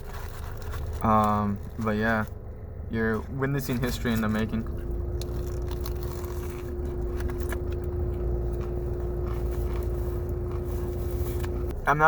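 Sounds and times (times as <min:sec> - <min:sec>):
car engine idling: 0:00.0 - 0:12.0.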